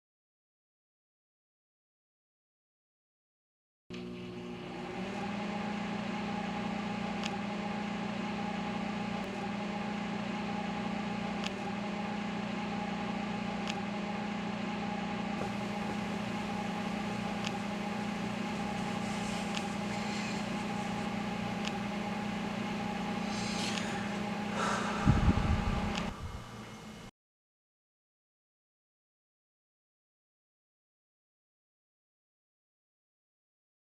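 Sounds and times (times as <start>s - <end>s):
microwave oven humming: 3.9s - 27.1s.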